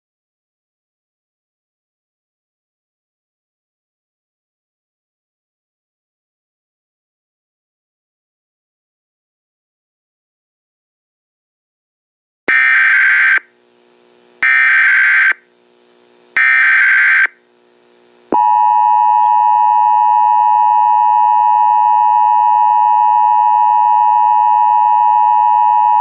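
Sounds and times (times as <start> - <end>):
digital data bursts: 12.5 - 13.4, 14.4 - 15.4.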